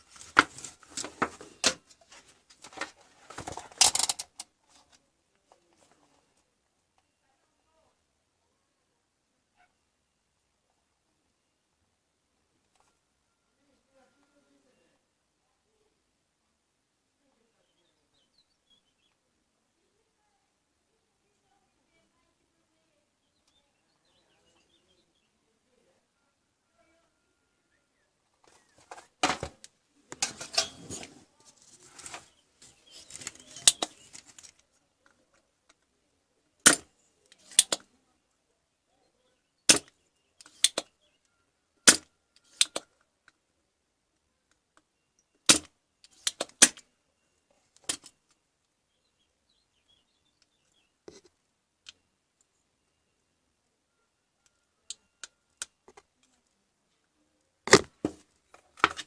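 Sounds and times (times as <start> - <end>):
rustling and clatter: 0.0 - 6.4, 30.2 - 34.6
sharp clicks and snaps: 39.7 - 40.9.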